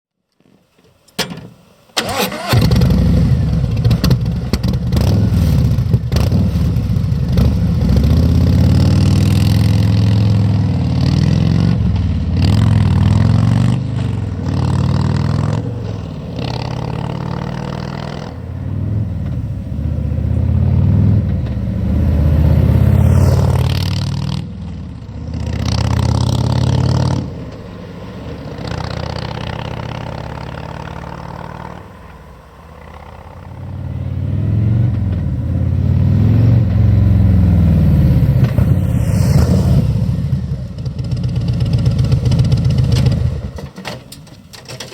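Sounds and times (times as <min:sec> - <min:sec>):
motorcycle starter cranking: 0:01.1 - 0:03.2
motorcycle engine idling and revving: 0:02.0 - 0:44.9.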